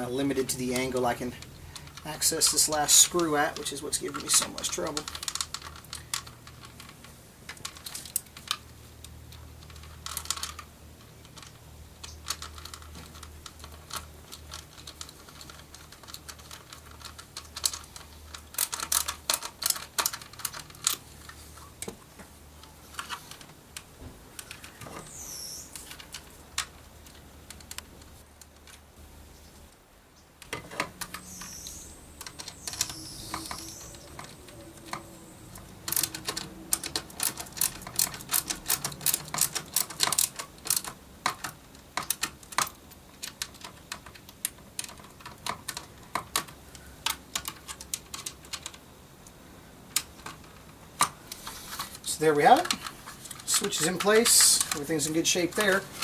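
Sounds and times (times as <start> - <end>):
plastic squeaks: 30.2 - 40.9.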